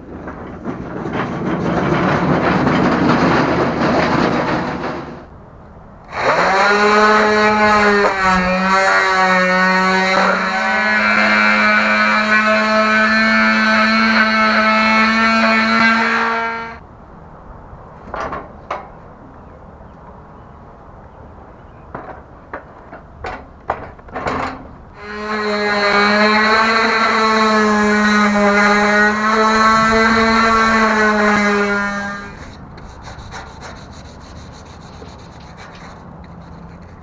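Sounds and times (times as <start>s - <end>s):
power sander on metal: 6.1s - 16.8s, 25.0s - 37.0s.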